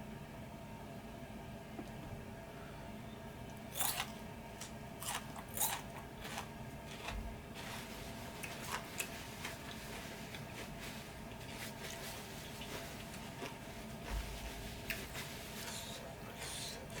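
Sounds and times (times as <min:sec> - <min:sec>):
person chewing crunchy food: 0:03.6 - 0:17.0.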